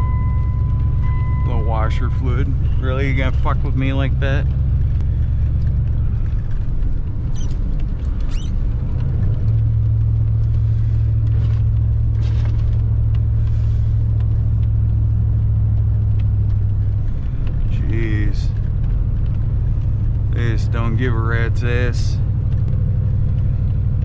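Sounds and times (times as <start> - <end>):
engine and road rumble: 0.0 - 24.0
steady low hum: 0.0 - 24.0
short high squeaks: 7.3 - 8.6.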